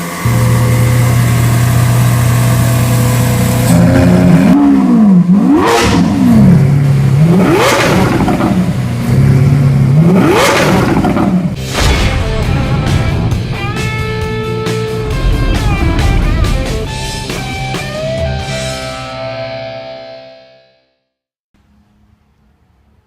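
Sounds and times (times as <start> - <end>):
car engine idling and revving: 0.0 - 11.7, 12.3 - 18.8.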